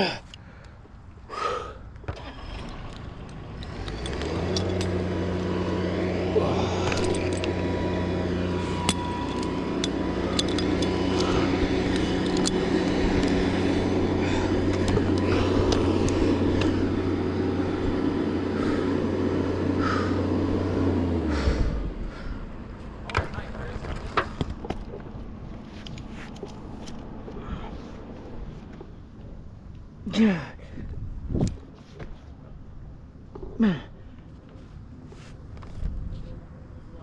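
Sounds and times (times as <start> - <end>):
small engine running: 2.1 - 28.8.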